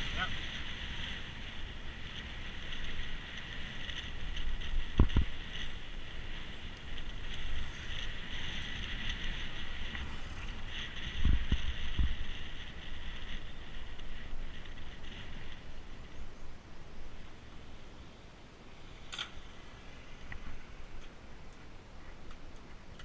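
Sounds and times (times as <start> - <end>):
bike tyres rumbling on rough track: 0.0 - 18.0
steady high hiss: 4.2 - 23.0.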